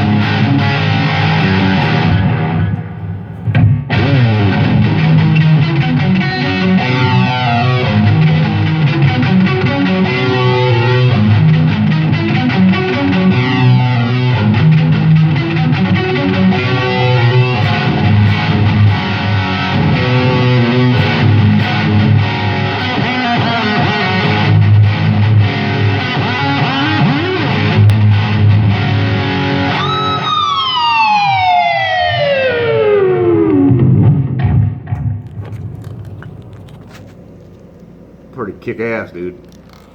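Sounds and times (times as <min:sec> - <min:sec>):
guitar note diving in pitch: 0:00.0 - 0:35.3
distorted electric guitar riffing: 0:00.0 - 0:36.7.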